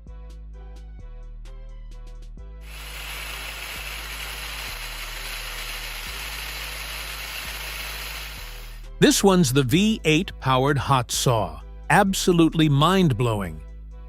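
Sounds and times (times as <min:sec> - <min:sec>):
background music with bass line: 0:00.0 - 0:02.7, 0:08.4 - 0:14.0
loud even hiss: 0:02.6 - 0:08.9.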